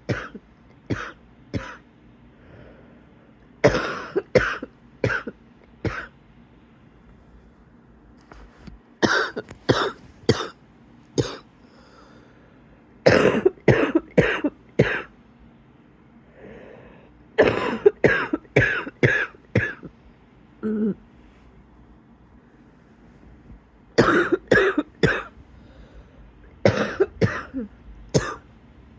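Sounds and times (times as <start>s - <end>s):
person coughing wheezily: 0.0s - 1.9s, 3.6s - 6.1s, 9.0s - 10.6s, 11.2s - 11.5s, 13.0s - 15.1s, 17.4s - 19.9s, 24.0s - 25.4s, 26.6s - 28.5s.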